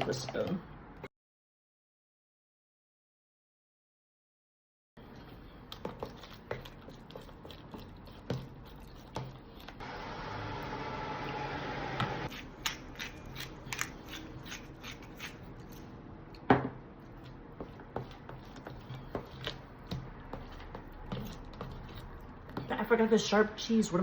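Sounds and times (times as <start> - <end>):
wet churning of dip: 5.0 - 9.8, 12.2 - 22.8
spoon scraping bowl: 12.0 - 15.9, 17.2 - 22.7.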